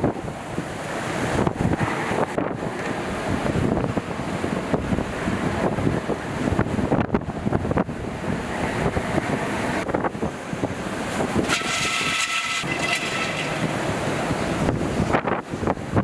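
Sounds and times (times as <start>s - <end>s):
wind buffeting microphone: 0.0s - 16.0s
high steady whistling tone: 11.4s - 13.8s.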